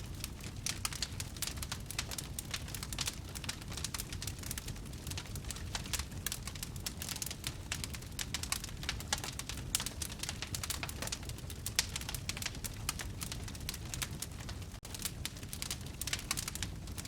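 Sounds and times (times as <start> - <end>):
fire crackling: 0.0 - 17.0.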